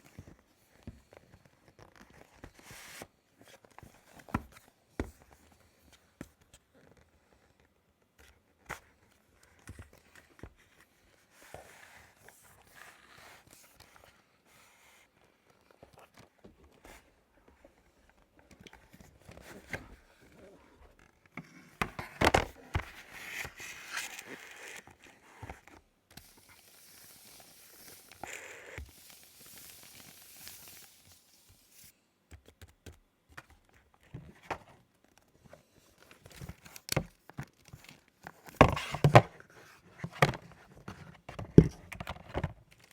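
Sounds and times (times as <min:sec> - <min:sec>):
paper rustling and tearing: 0:26.2 - 0:31.9.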